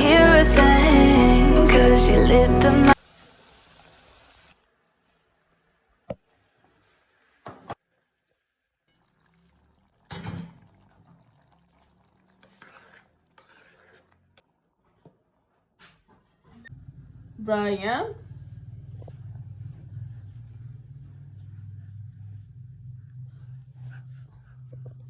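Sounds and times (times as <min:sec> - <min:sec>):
liquid pouring or splashing: 0:06.0 - 0:15.2.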